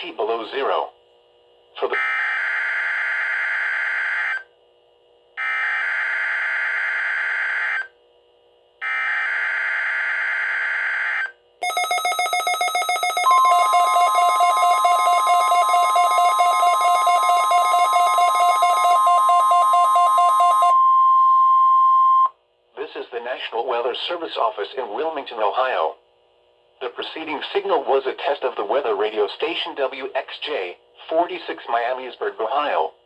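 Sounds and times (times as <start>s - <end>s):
pulsing electronic alarm: 1.9s - 4.5s, 5.4s - 7.9s, 8.8s - 22.3s
steady warning alarm tone: 8.8s - 22.3s
screechy digital data bursts: 11.6s - 20.7s.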